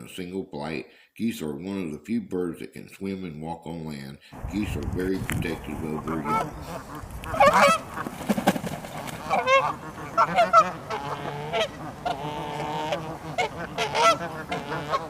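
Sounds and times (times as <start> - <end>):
geese honking: 5.6 - 15.0.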